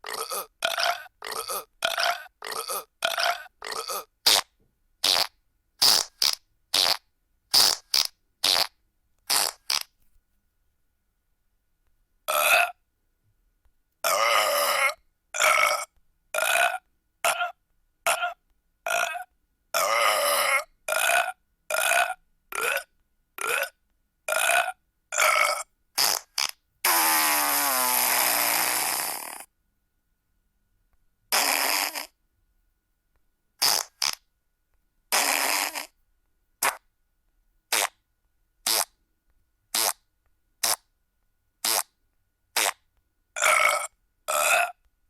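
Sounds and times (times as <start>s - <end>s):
long wavering burp: 0.0s - 4.1s, 14.1s - 25.7s, 43.4s - 44.8s
burps: 0.0s - 7.0s, 12.3s - 12.8s, 14.0s - 29.5s, 31.3s - 32.2s, 35.1s - 36.0s, 43.4s - 44.8s
fart sound effects: 1.4s - 9.9s, 26.0s - 29.5s, 31.3s - 32.2s, 33.6s - 34.2s, 35.1s - 36.0s, 36.6s - 36.8s, 37.7s - 38.0s, 38.6s - 39.0s, 39.7s - 40.0s, 41.6s - 41.9s, 42.6s - 42.8s.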